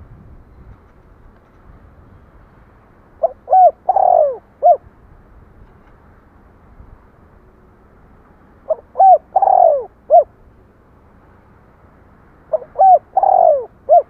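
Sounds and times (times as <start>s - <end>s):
dove cooing: 3.2s - 4.8s, 8.7s - 10.3s, 12.5s - 14.0s.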